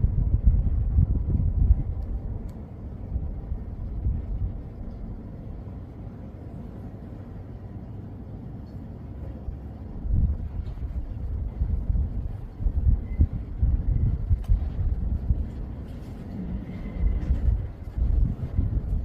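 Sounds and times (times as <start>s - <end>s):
low rumbling outdoor noise: 0.0s - 19.0s.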